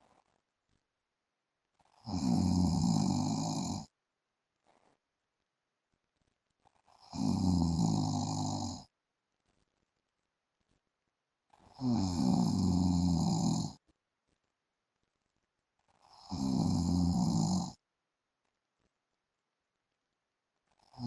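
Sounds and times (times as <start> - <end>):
man snoring: 2.0 - 3.9, 6.9 - 8.9, 11.8 - 13.8, 16.1 - 17.8.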